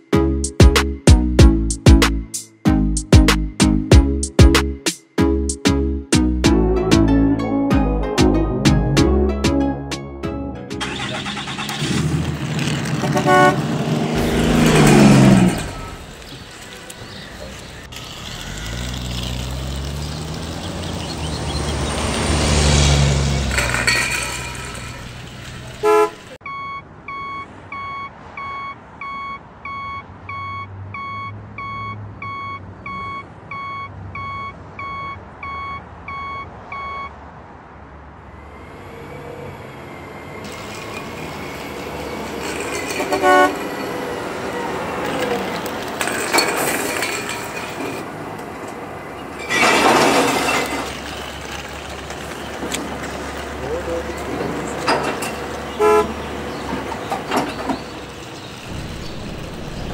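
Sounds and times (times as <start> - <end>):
road noise: 0.0 - 59.9
truck engine running: 10.8 - 22.4, 23.2 - 26.4, 39.9 - 49.4
reversing alarm beeps: 26.4 - 37.1.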